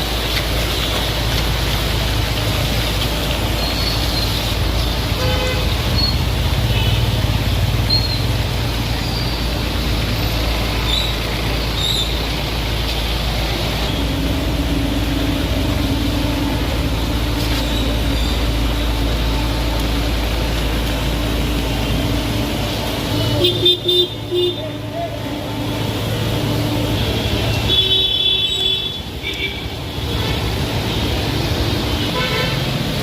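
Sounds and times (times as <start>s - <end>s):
road traffic: 0.0s - 33.0s
vehicle horn toot: 5.2s - 5.7s, 32.0s - 32.6s.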